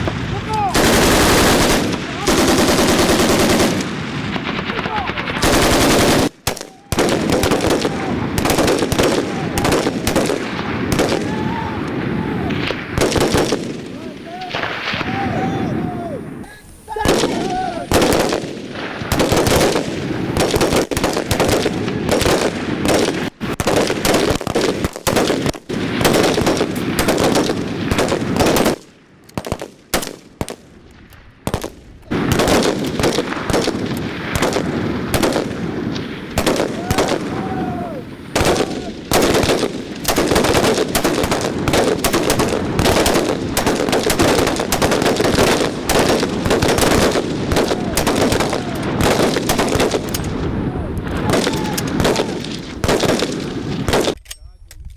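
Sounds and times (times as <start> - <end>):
machine-gun bursts: 0.7 - 4.0, 4.6 - 11.2, 38.4 - 50.1
single gunshots: 16.9 - 28.8, 31.5 - 37.7, 38.4 - 50.4, 51.1 - 54.2.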